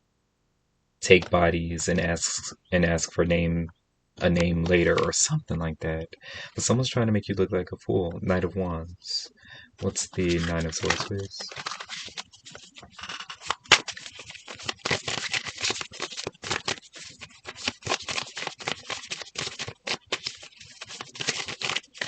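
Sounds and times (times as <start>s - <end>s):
cards being shuffled: 4.3s - 5.2s, 9.8s - 22.0s.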